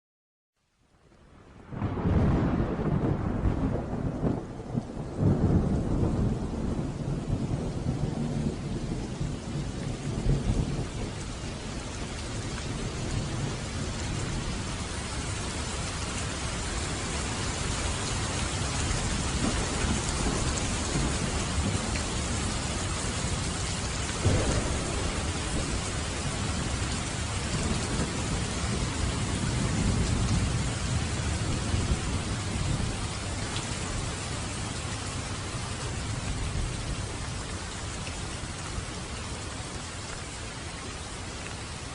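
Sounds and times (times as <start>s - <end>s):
heavy rain: 0.6s - 41.9s
low rolling thunder: 1.6s - 37.7s
sharp thunderclap: 1.7s - 11.2s, 24.1s - 32.9s.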